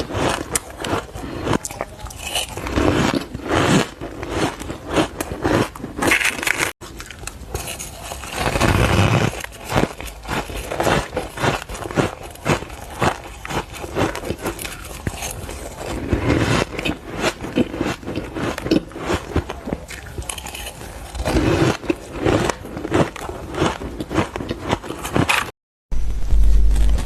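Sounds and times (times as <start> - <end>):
crunching ice with teeth: 0.0 - 25.5.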